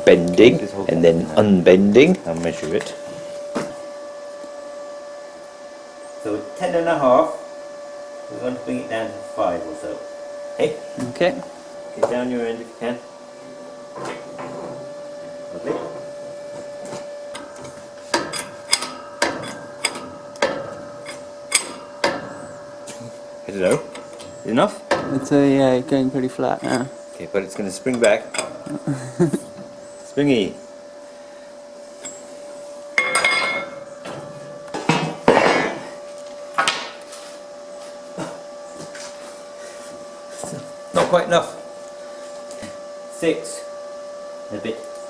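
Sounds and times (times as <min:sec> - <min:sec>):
steady hum: 0:00.0 - 0:45.0.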